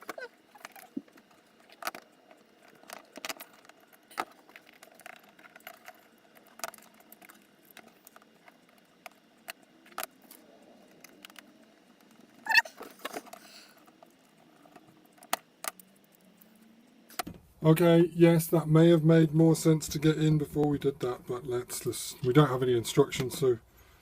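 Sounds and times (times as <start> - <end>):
small parts clicking and clinking: 0.0 - 17.2.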